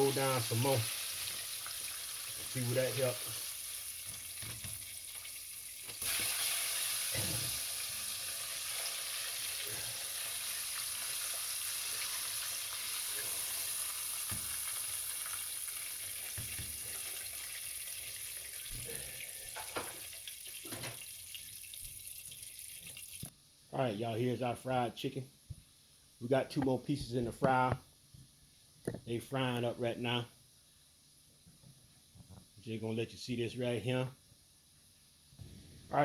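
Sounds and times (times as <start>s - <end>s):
chicken deep-frying in oil: 0.0s - 23.3s.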